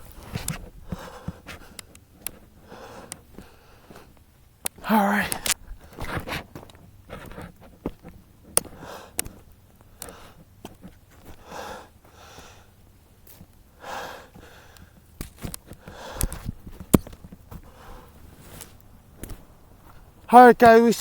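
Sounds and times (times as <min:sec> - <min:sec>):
person breathing hard: 0:00.8 - 0:01.9, 0:02.6 - 0:04.2, 0:08.6 - 0:10.5, 0:11.3 - 0:12.8, 0:13.8 - 0:15.0, 0:15.7 - 0:16.6, 0:17.6 - 0:18.3
footsteps clicking: 0:14.3 - 0:20.1.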